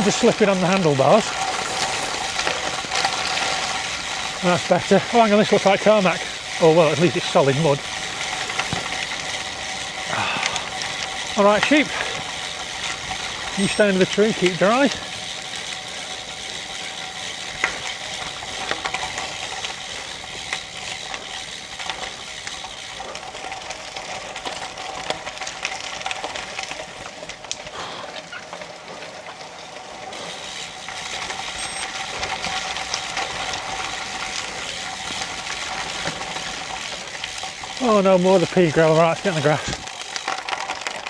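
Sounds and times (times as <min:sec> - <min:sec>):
bicycle tyres on wet gravel: 0:00.0 - 0:41.0
pouring rain: 0:10.0 - 0:12.4.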